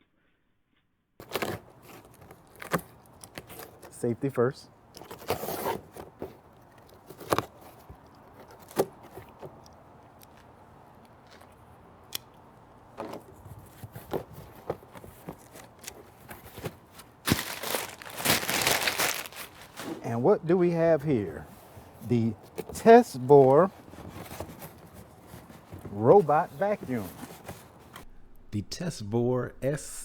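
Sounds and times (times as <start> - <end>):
tape and cardboard tearing: 1.2 - 4.2, 4.9 - 12.4, 13.0 - 20.1
cardboard box rustling: 1.2 - 28.0.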